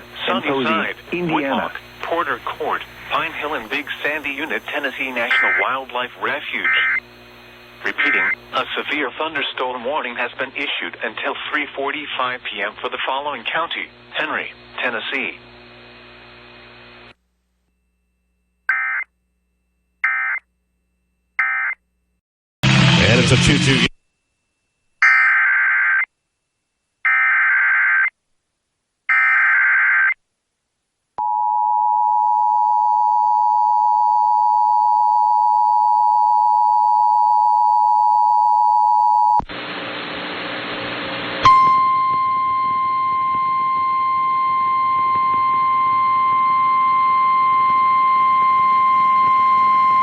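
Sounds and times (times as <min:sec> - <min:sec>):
radio static: 0:00.0 - 0:17.0, 0:22.7 - 0:24.0
radio hiss: 0:00.0 - 0:17.1, 0:22.7 - 0:24.0
digital data tone bursts: 0:00.3 - 0:07.0, 0:07.8 - 0:08.8
single-pitch alarm tone: 0:05.2 - 0:05.8, 0:41.4 - 0:50.0
two-tone attention signal: 0:41.4 - 0:50.0.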